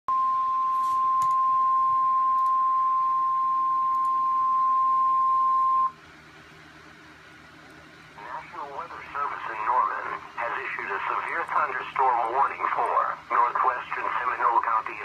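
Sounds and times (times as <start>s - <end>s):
steady high warning tone: 0.1s - 6.0s, 8.2s - 15.0s
faint radio hiss: 8.1s - 15.0s.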